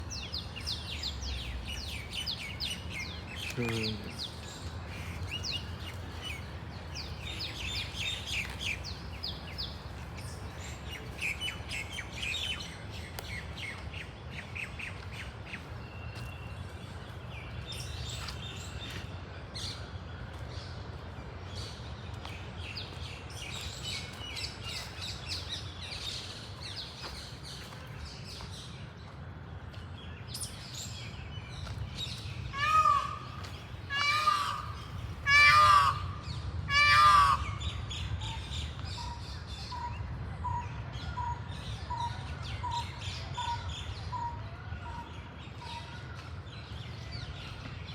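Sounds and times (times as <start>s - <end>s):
small birds chirping: 0.0s - 36.0s
loud repeated bird call: 32.6s - 37.8s.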